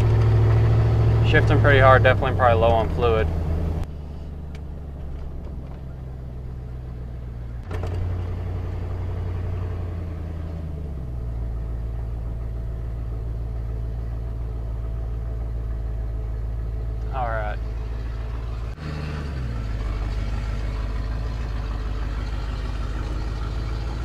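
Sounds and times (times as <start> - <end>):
transmission clunk: 0.0 - 6.2, 7.6 - 10.2
truck engine running: 0.0 - 24.0.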